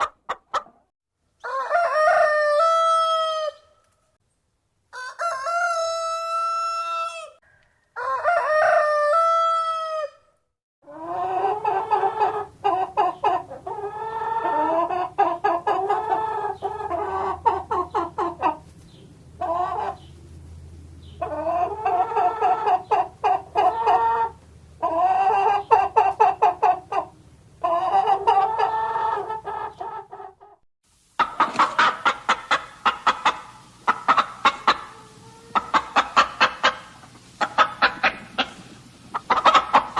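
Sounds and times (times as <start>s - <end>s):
hens clucking and cackling: 0.0s - 3.7s, 4.9s - 10.2s, 10.8s - 20.5s, 21.1s - 30.6s, 31.2s - 39.9s
rooster crowing: 1.4s - 3.7s, 4.9s - 10.2s.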